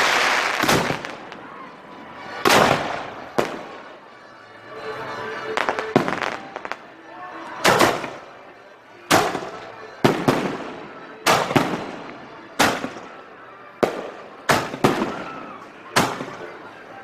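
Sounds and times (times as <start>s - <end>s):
fireworks exploding: 0.0s - 1.4s, 2.4s - 3.8s, 5.5s - 6.8s, 9.1s - 13.1s, 13.8s - 15.4s.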